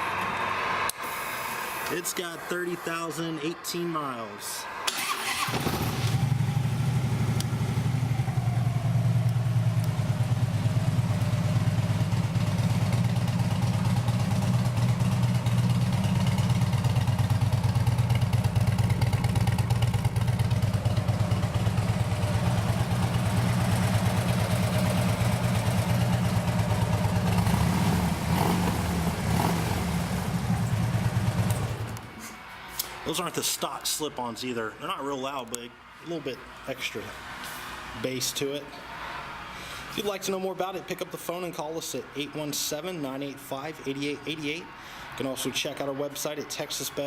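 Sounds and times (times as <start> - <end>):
motorcycle engine idling: 5.5 - 32.0.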